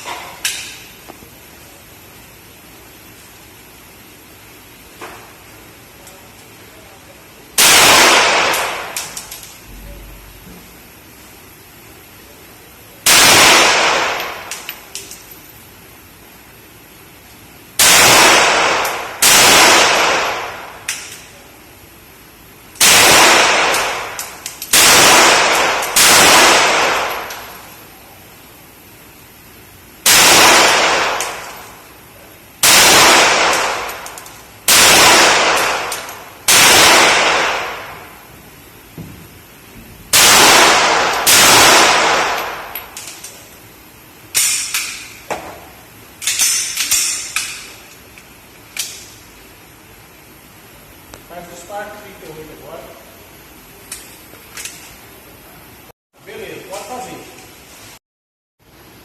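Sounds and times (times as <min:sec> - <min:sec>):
pistol shots echoing: 0:07.6 - 0:09.3, 0:13.1 - 0:14.7, 0:17.8 - 0:20.9, 0:22.8 - 0:27.7, 0:30.1 - 0:31.7, 0:32.6 - 0:38.2, 0:40.2 - 0:42.8.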